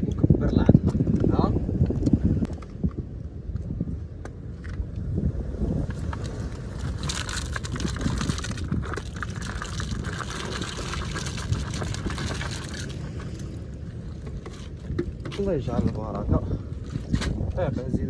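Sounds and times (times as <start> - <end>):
wind buffeting microphone: 0.0 - 18.0
seawater washing over rocks: 5.8 - 16.4.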